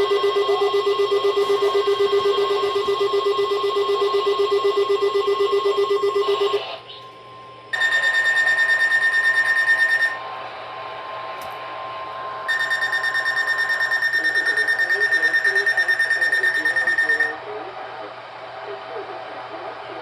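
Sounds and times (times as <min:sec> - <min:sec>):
pulsing electronic alarm buzzer: 0:00.0 - 0:06.8, 0:07.7 - 0:10.2, 0:12.5 - 0:17.4
steady emergency alert tone: 0:00.0 - 0:06.9, 0:07.7 - 0:10.2, 0:12.5 - 0:17.4.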